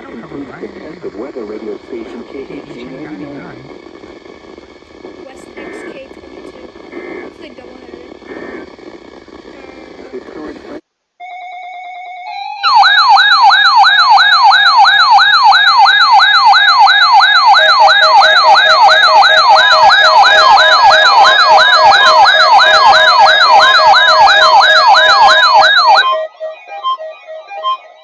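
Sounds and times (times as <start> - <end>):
alarm siren wailing: 11.2 - 28.0
alarm beeping rapidly: 12.3 - 28.0.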